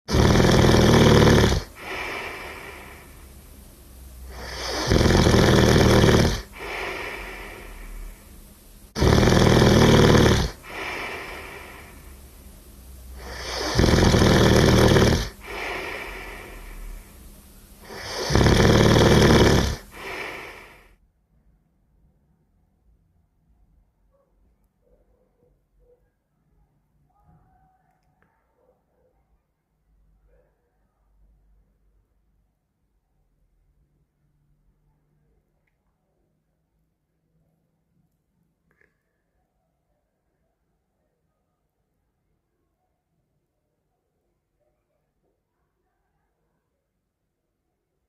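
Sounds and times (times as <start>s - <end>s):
person snoring: 0.1s - 3.5s, 4.1s - 8.4s, 9.0s - 12.4s, 13.0s - 20.9s
noisy breathing: 0.1s - 21.0s.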